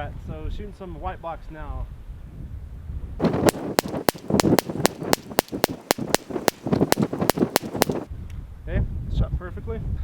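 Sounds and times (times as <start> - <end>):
pistol firing rapid shots: 3.2 - 8.1.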